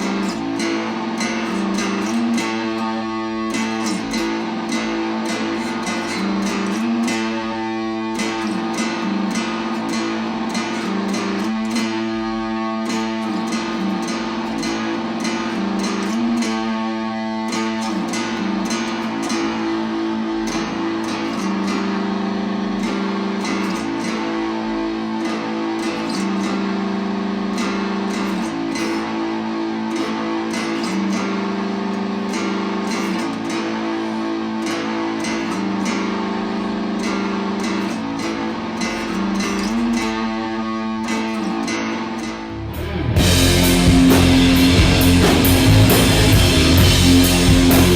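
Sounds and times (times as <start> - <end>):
guitar playing chords: 0.0 - 47.9.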